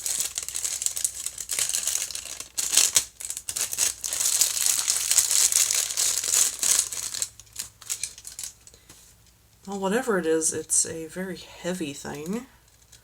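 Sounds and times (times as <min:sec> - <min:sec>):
packaging crinkling and rustling: 0:00.0 - 0:09.8.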